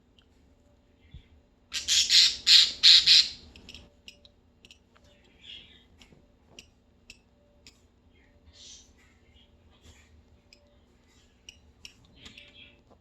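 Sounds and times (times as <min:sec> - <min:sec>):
budgies harsh rasping calls: 0:01.7 - 0:03.4
faint clicks and small chirps: 0:10.5 - 0:13.0.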